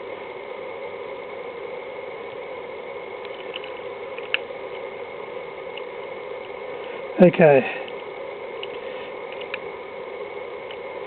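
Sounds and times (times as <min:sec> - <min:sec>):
background hiss and hum: 0:00.0 - 0:11.0
small clicks of key barrel parts: 0:03.2 - 0:04.4.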